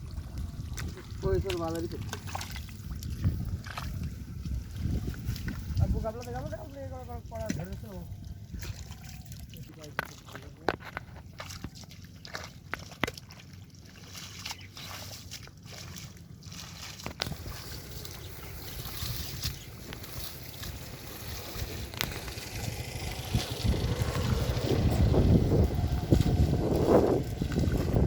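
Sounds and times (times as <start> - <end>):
wind buffeting the microphone: 0.0 - 9.0, 17.1 - 28.0
water sloshing and trickling: 0.0 - 28.0.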